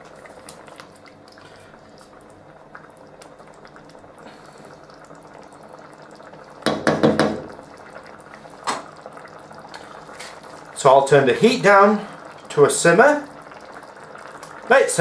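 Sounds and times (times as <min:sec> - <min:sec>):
sauce bubbling in a pan: 0:00.0 - 0:15.0
short knock: 0:06.7 - 0:07.5.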